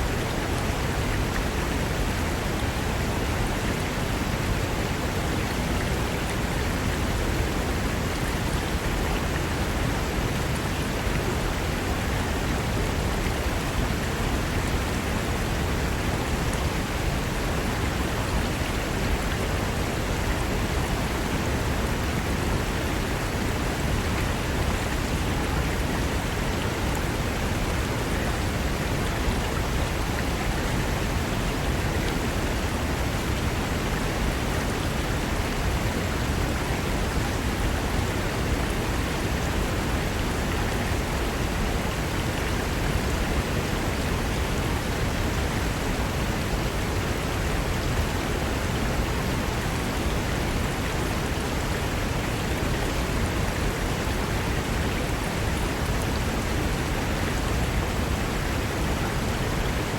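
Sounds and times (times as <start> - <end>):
river rushing over rocks: 0.0 - 59.9.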